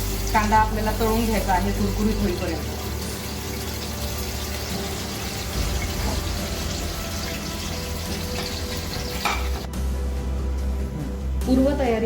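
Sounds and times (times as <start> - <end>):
onions sizzling in hot oil: 0.0 - 9.7.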